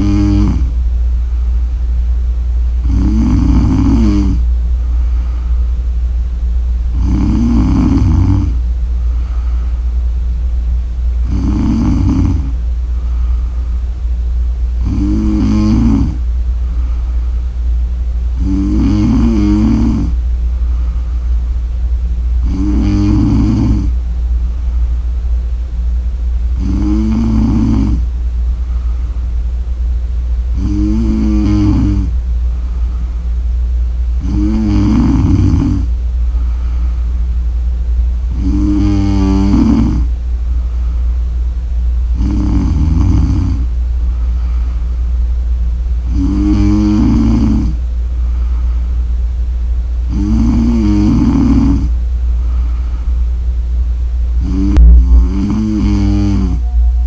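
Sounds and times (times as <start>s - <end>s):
woman snoring: 0.0s - 0.8s, 2.8s - 4.4s, 7.0s - 8.6s, 11.2s - 12.6s, 14.8s - 16.2s, 18.4s - 20.2s, 22.4s - 24.0s, 26.6s - 28.1s, 30.6s - 32.2s, 34.2s - 35.9s, 38.3s - 40.1s, 42.2s - 43.7s, 46.1s - 47.8s, 50.1s - 52.0s, 54.4s - 56.8s
steady low hum: 0.0s - 57.0s.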